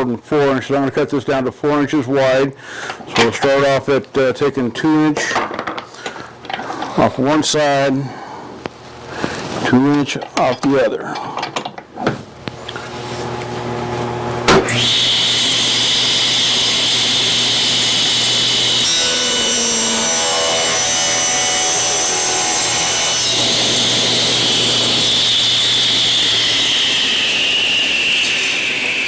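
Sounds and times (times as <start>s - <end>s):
power saw cutting wood: 12.7s - 29.0s.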